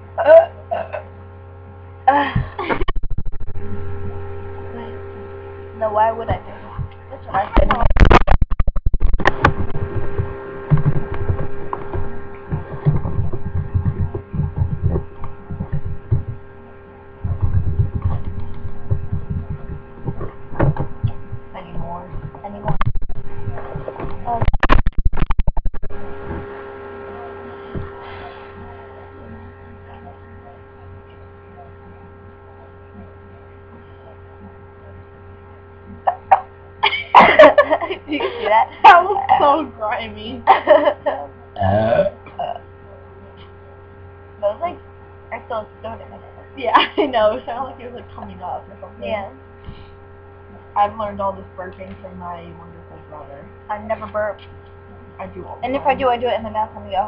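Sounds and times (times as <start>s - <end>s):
low steady hum: 0.0s - 57.0s
person burping: 41.6s - 42.6s.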